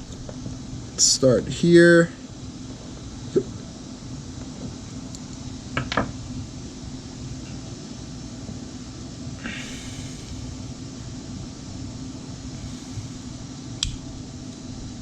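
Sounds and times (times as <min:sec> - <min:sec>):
steady low hum: 0:00.0 - 0:15.0
sharp clicks: 0:13.8 - 0:14.0.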